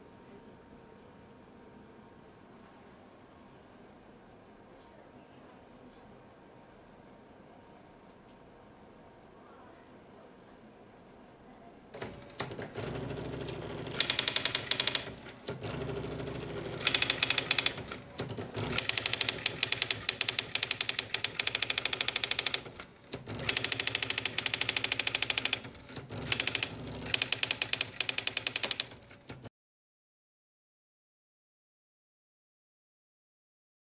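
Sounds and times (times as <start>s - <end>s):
typewriter motor hum: 12.0s - 29.5s
rapid typewriter key strikes: 13.8s - 15.9s, 16.6s - 29.5s.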